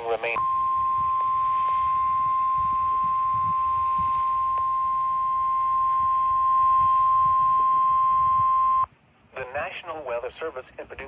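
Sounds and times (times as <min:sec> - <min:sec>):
steady high-pitched alarm beep: 0:00.4 - 0:08.9.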